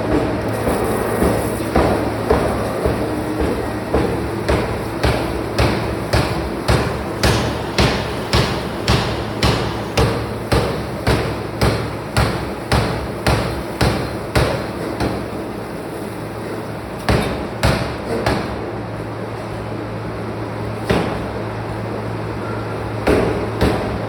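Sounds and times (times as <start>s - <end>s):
factory hum: 0.0s - 24.0s
forging machine striking metal: 0.1s - 15.3s.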